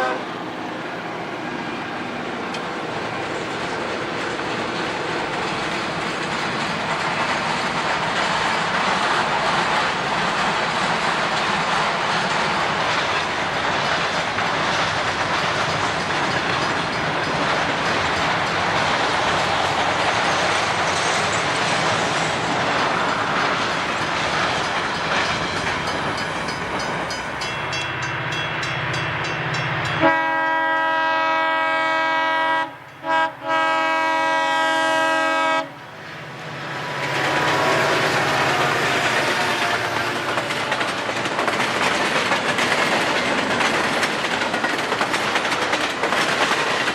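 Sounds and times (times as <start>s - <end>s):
locomotive air horn: 0.0s - 0.4s, 30.0s - 40.3s
train rumble and wheel clatter: 0.0s - 46.9s.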